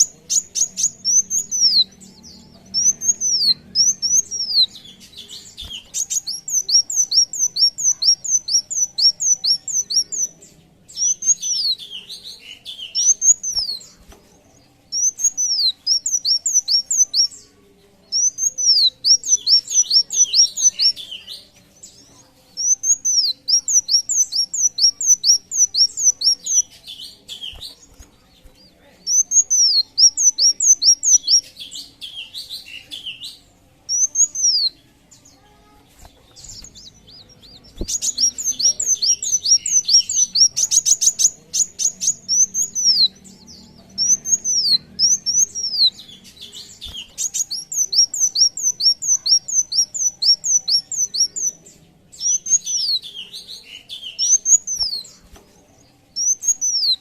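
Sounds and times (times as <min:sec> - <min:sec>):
buzzy bird trill: 0:00.0 - 0:14.1, 0:18.2 - 0:22.0, 0:22.6 - 0:33.3, 0:33.9 - 0:51.6
sunbird chirping: 0:35.4 - 0:51.6.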